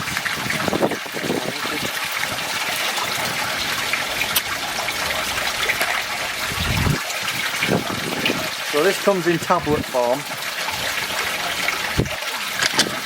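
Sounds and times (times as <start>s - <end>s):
pond water trickling: 0.0s - 13.0s
brief low rumble: 6.5s - 7.0s.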